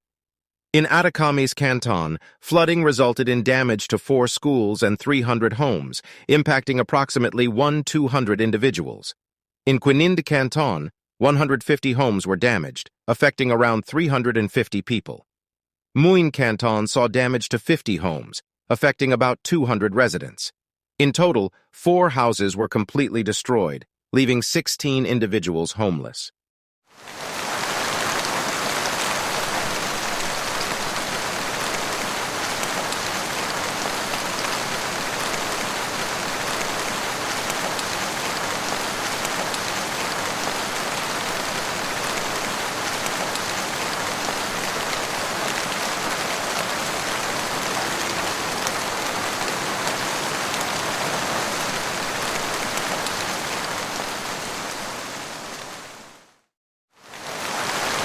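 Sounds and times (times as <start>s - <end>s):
heavy rain falling: 27.0s - 56.2s, 57.0s - 58.0s.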